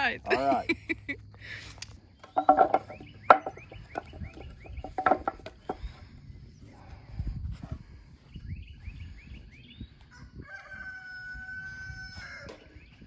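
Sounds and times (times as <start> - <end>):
sharp knocks: 2.4 - 5.8.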